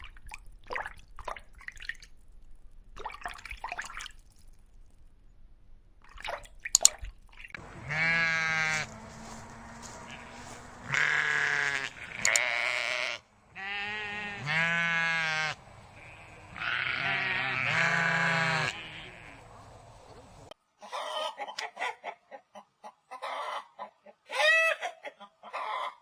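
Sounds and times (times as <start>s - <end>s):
chicken clucking: 7.6s - 12.5s, 13.5s - 26.0s
goat bleating: 7.6s - 20.5s.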